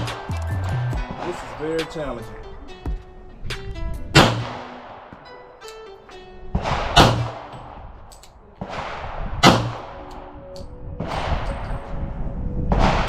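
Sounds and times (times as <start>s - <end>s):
pistol shots with echo: 4.1s - 5.2s, 6.6s - 11.8s.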